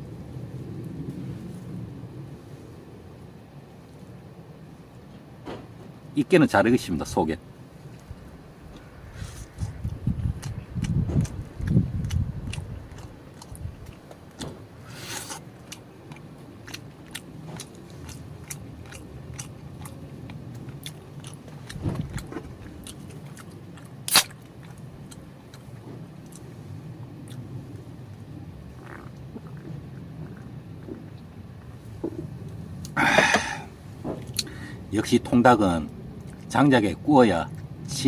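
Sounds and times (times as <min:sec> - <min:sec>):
person chewing crunchy food: 0:09.2 - 0:26.5, 0:28.8 - 0:31.2.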